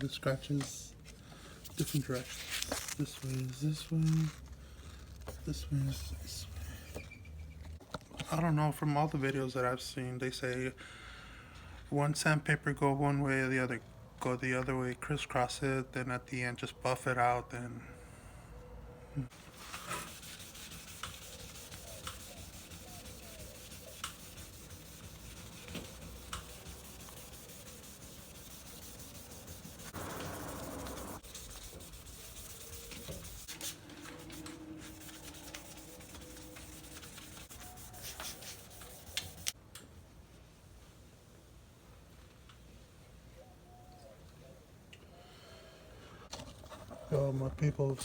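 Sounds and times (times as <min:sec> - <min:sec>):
sandpaper scratching on plastic: 0:19.4 - 0:39.6.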